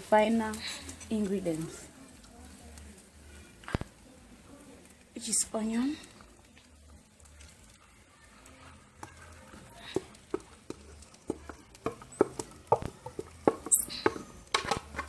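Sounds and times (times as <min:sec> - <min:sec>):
spoon tapping against pot: 0:09.9 - 0:14.8.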